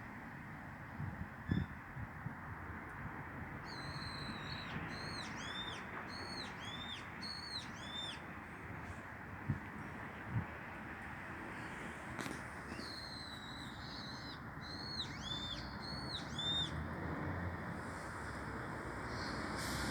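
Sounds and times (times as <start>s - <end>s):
bird calling: 3.7s - 8.2s, 12.7s - 16.8s.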